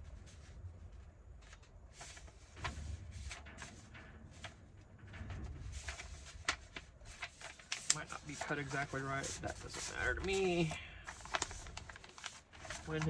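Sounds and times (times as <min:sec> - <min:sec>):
low steady rumble: 0:00.0 - 0:07.6
paper rustling and sliding: 0:00.0 - 0:13.0.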